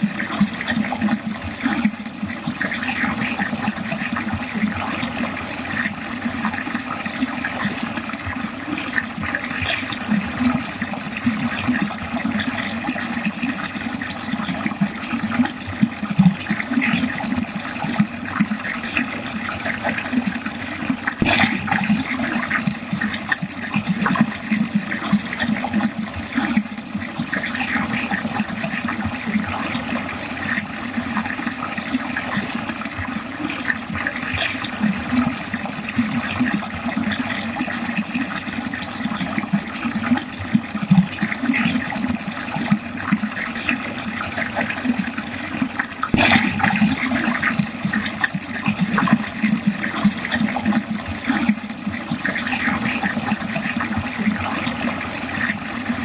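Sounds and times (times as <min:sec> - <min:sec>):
water gurgling down a drain: 0:00.0 - 0:56.0.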